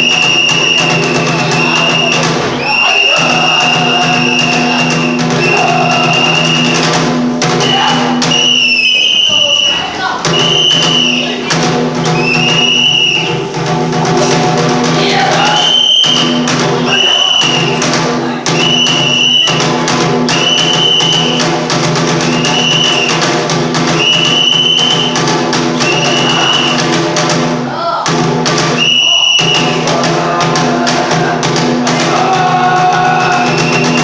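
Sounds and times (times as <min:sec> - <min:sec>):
drum strikes: 0:00.0 - 0:34.0.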